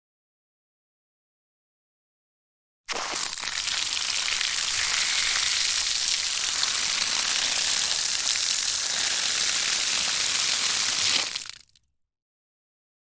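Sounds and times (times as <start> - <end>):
water running from a faucet: 2.9 - 11.8.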